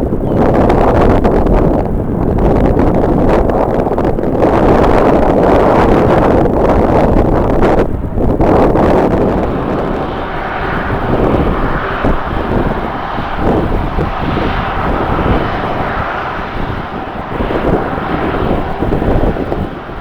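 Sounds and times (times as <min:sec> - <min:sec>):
jet engines running: 0:00.0 - 0:20.0
wind buffeting microphone: 0:00.0 - 0:20.0.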